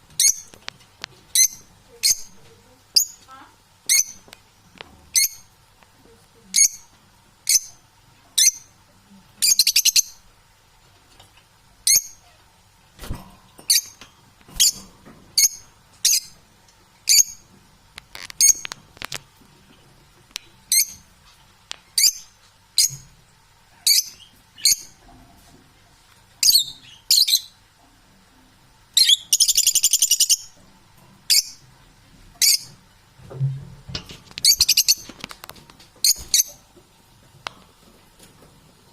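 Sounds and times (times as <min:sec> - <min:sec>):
parrot chirping: 0:00.2 - 0:00.6, 0:01.3 - 0:02.3, 0:02.9 - 0:03.2, 0:03.9 - 0:04.2, 0:05.1 - 0:05.5, 0:06.5 - 0:07.8, 0:08.4 - 0:08.7, 0:09.4 - 0:10.2, 0:11.8 - 0:12.4, 0:15.4 - 0:16.4, 0:17.1 - 0:17.4, 0:20.7 - 0:21.0, 0:22.0 - 0:23.0, 0:23.8 - 0:25.0, 0:26.4 - 0:27.6, 0:28.9 - 0:30.6, 0:31.3 - 0:31.6, 0:32.4 - 0:32.8, 0:34.4 - 0:35.1, 0:36.0 - 0:36.6.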